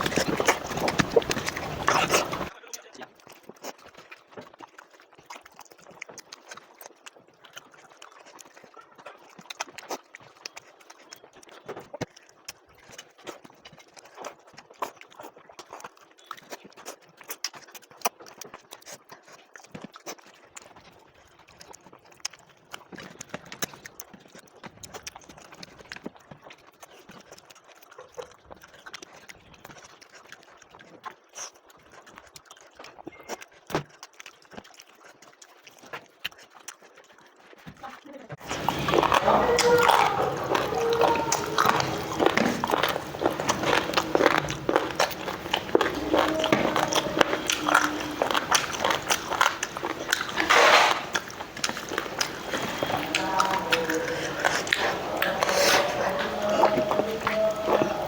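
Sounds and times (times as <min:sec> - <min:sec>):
chewing and lip smacks: 0:00.0 - 0:58.0.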